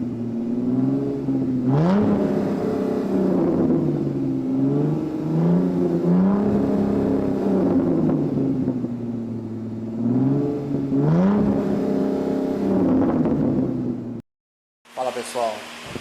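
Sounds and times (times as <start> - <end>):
car engine revving: 0.0 - 14.2.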